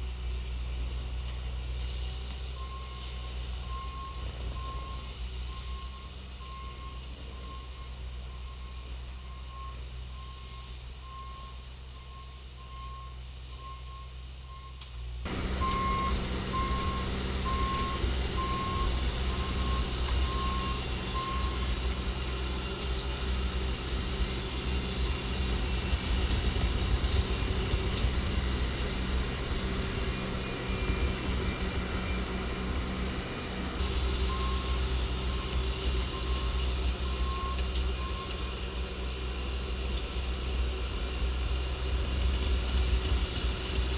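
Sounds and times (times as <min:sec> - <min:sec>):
diesel engine running: 0:00.0 - 0:43.9
backup alarm beeping: 0:15.6 - 0:21.7.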